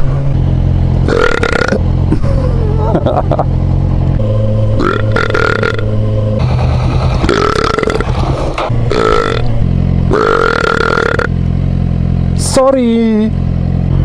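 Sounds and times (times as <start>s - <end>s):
motorcycle engine running: 0.0s - 14.0s
man belching loudly: 1.1s - 1.8s, 4.8s - 5.9s, 7.2s - 8.1s, 8.9s - 9.5s, 10.1s - 11.3s.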